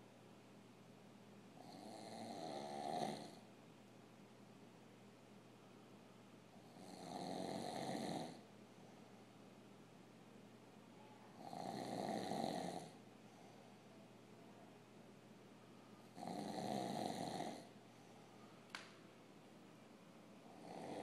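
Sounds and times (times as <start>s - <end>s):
loud snoring: 1.6s - 3.4s, 6.6s - 8.4s, 11.4s - 13.0s, 16.2s - 17.7s, 20.5s - 21.0s.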